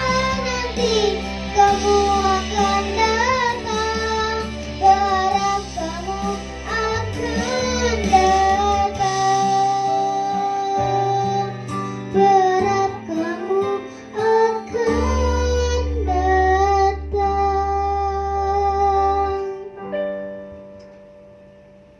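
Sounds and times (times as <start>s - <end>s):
person singing with vibrato: 0.0s - 19.9s
guitar accompaniment: 0.0s - 21.9s.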